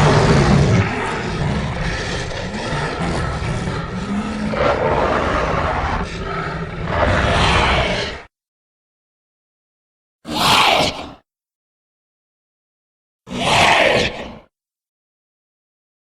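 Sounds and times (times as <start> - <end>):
low growling roar: 0.0 - 8.3, 10.3 - 11.2, 13.3 - 14.5.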